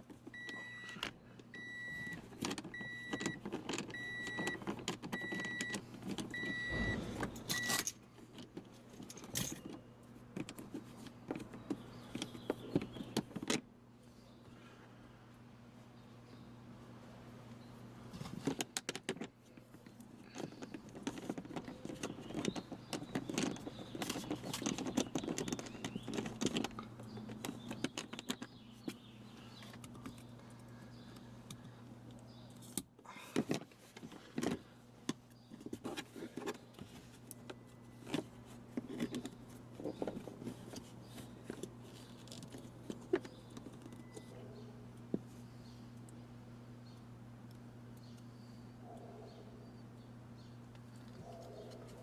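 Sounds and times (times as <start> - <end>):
steady low hum: 5.3 - 18.5
plastic and metal parts rattling: 18.3 - 28.6, 35.4 - 44.3.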